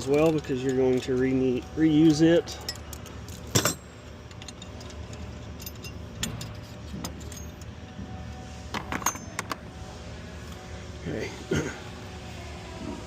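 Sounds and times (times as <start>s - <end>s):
metal tools clinking: 0.0s - 7.8s, 8.8s - 9.6s.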